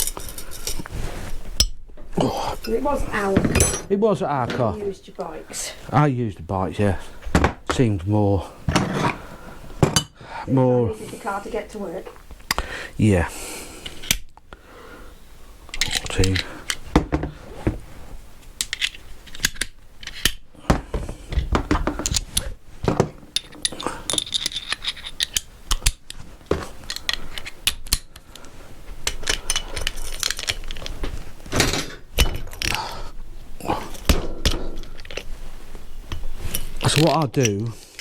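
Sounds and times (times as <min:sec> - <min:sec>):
metal tools and parts clattering: 0:00.0 - 0:00.9, 0:02.5 - 0:04.7, 0:23.3 - 0:25.5, 0:31.5 - 0:32.8.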